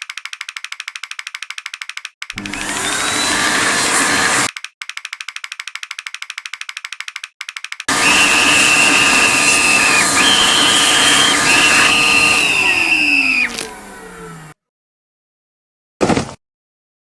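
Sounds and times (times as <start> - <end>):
rapid clicking: 0.0 - 2.8, 4.5 - 7.9
high-speed electric motor whine: 2.4 - 4.5, 7.9 - 14.6
grinding noise: 7.9 - 14.5.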